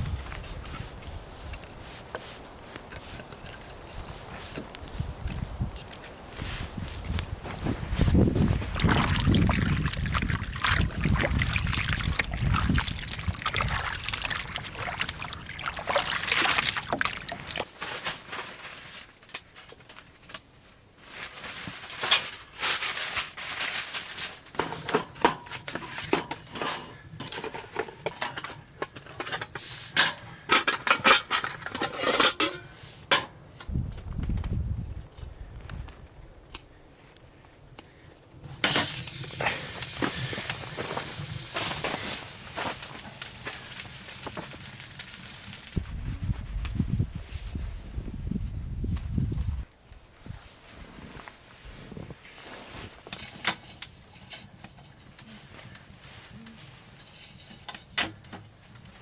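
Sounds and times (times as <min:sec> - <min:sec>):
water pouring and sloshing: 0:06.8 - 0:18.1, 0:38.7 - 0:45.8
metal cookware clinking: 0:30.7 - 0:32.7.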